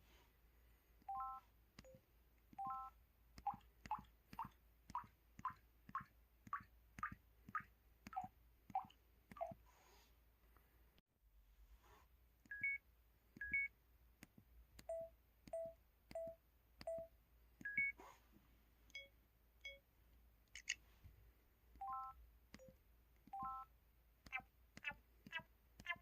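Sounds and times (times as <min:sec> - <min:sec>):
phone keypad beeps: 0:01.1 - 0:02.0, 0:02.6 - 0:03.6, 0:12.5 - 0:12.8, 0:13.4 - 0:13.7, 0:14.8 - 0:18.0, 0:21.8 - 0:23.7.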